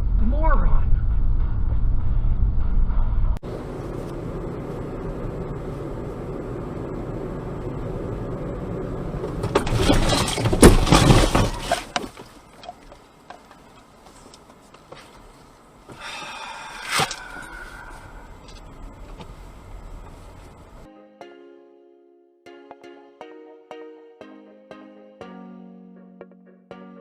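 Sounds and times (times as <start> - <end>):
low rumble: 0.0 - 9.5
car road noise: 0.0 - 20.9
vehicle collision crunching: 8.6 - 20.9.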